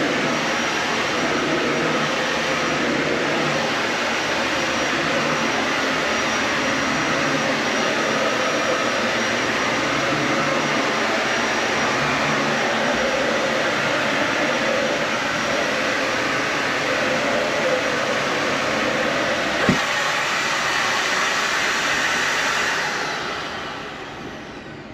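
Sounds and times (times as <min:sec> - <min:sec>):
vacuum cleaner running: 0:00.0 - 0:24.9
short knock: 0:19.6 - 0:19.8.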